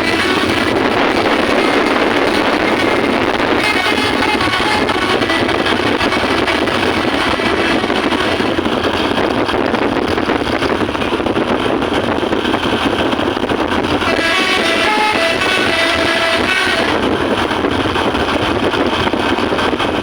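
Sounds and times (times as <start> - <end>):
musical bus horns playing tune: 0.0 - 9.0, 14.0 - 17.6
bus engine noise: 0.0 - 20.0.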